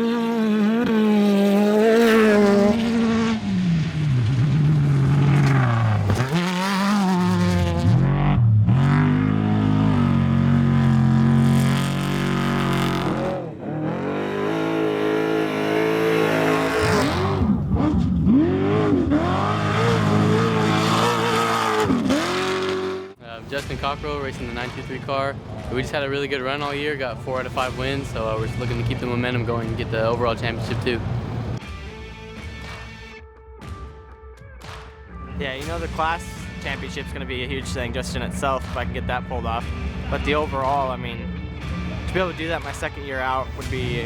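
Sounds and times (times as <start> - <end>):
cars passing by: 0.0 - 31.6
race car engines revving: 0.0 - 31.6, 35.3 - 44.0.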